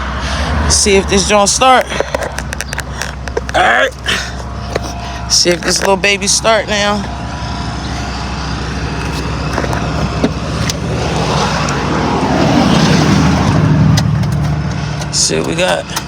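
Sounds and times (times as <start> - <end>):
car engine starting and running: 0.0 - 16.0.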